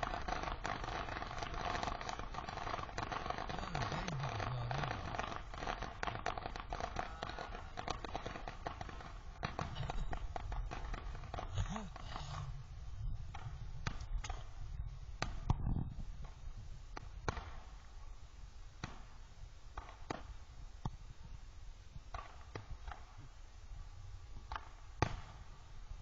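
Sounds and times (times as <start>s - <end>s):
distant fireworks popping: 0.0s - 18.1s, 18.8s - 21.3s, 22.0s - 23.4s, 24.4s - 26.0s
low steady rumble: 9.1s - 19.7s.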